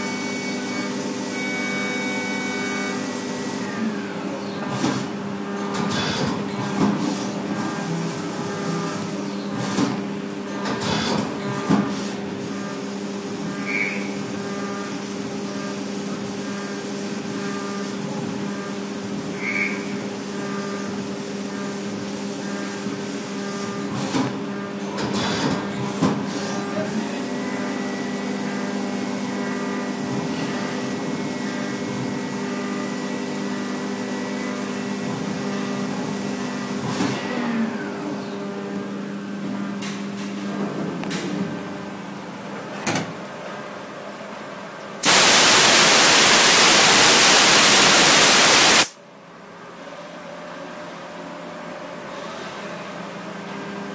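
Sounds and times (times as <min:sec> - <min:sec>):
machine high squeal: 0:00.0 - 0:03.1, 0:13.6 - 0:14.2, 0:19.3 - 0:20.0
machine hum with held tones: 0:00.0 - 0:04.3, 0:45.0 - 0:49.0
coolant hiss: 0:45.0 - 0:48.9
cnc machine humming: 0:45.0 - 0:49.0.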